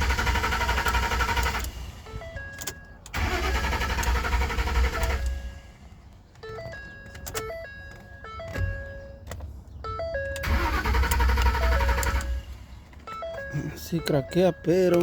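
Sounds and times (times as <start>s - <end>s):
starter cranking engine: 0.0s - 1.9s, 3.1s - 5.4s, 10.4s - 12.5s.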